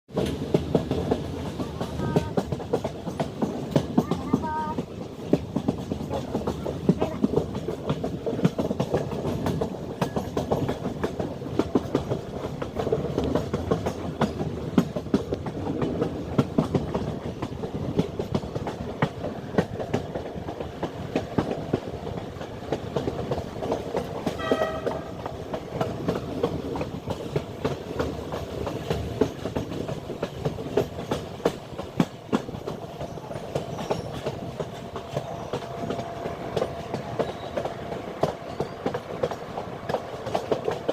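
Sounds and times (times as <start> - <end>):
train wheels clattering on rails: 0.1 - 40.9
train horn note: 24.3 - 25.4.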